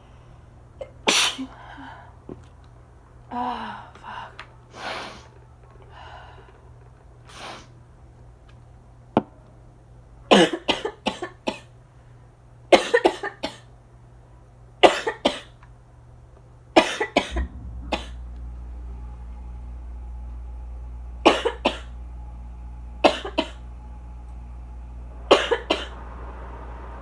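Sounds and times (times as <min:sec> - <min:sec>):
air conditioner hum: 0:00.0 - 0:27.0
person coughing harshly: 0:25.3 - 0:25.9.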